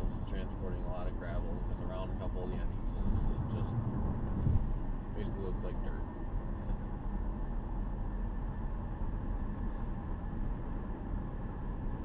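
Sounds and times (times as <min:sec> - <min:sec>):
car engine hum: 0:00.0 - 0:12.0
road and tyre noise: 0:00.0 - 0:12.0.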